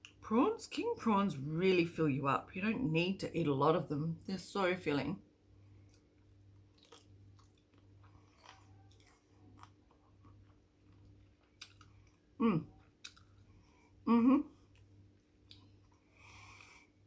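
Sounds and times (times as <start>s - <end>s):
chewing mouth clicks and smacks: 6.7s - 12.2s, 12.8s - 13.5s, 14.7s - 16.0s.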